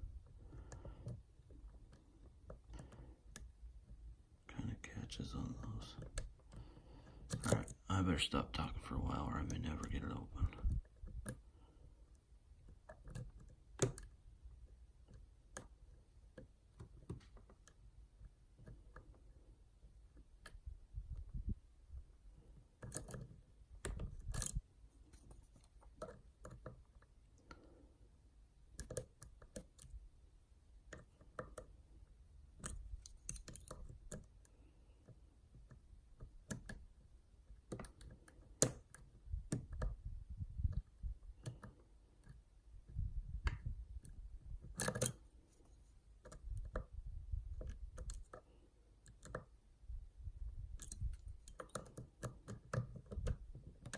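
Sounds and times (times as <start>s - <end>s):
lock pick clicks and scrapes: 7.1s - 7.8s, 22.8s - 27.1s, 28.8s - 30.0s, 32.6s - 34.4s, 44.0s - 49.5s, 50.7s - 53.9s
lock pins setting clicks: 32.6s - 34.3s, 44.6s - 45.2s.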